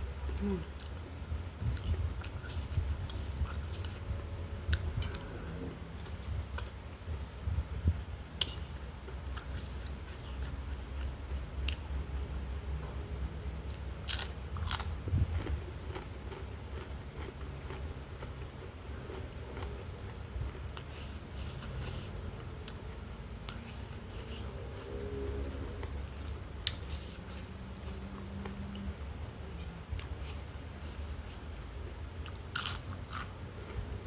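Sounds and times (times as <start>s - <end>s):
person chewing: 13.6s - 22.8s, 23.4s - 28.9s, 29.6s - 33.8s.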